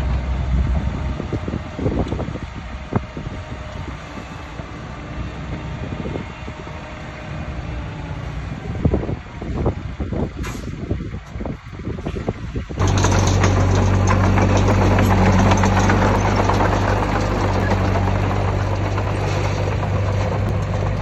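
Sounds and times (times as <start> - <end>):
bulldozer diesel engine under load: 0.0 - 21.0
metallic track clanks: 12.8 - 21.0.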